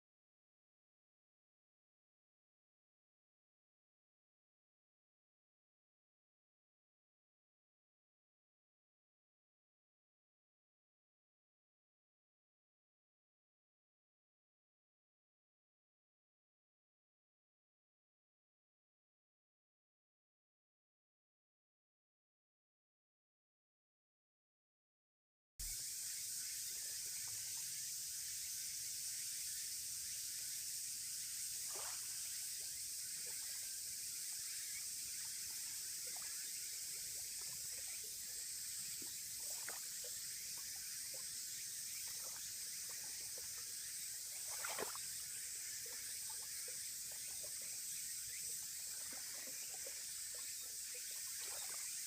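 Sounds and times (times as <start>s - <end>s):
high-pitched hiss: 25.6s - 52.0s.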